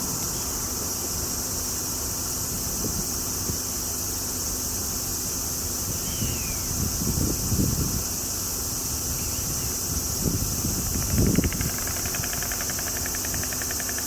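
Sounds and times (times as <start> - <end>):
high-pitched insect drone: 0.0 - 14.0
faint low wind rumble: 5.6 - 12.5.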